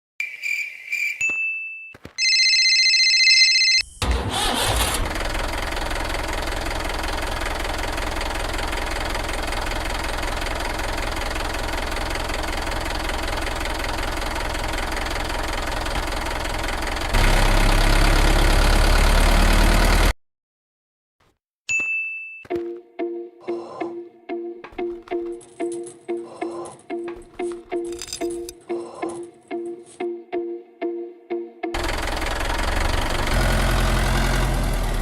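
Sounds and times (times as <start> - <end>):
engine running: 4.0 - 20.1, 31.8 - 35.0.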